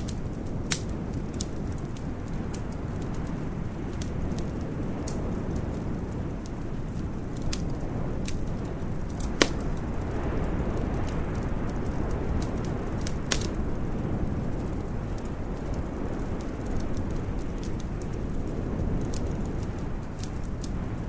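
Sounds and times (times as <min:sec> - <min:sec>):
wood fire crackling: 0:00.0 - 0:21.0
sharp pop of fire: 0:09.2 - 0:10.0.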